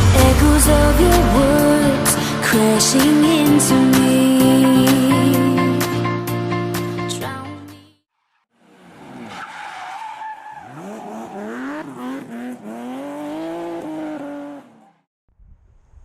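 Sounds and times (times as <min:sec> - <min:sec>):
car engine revving: 0:10.5 - 0:15.1.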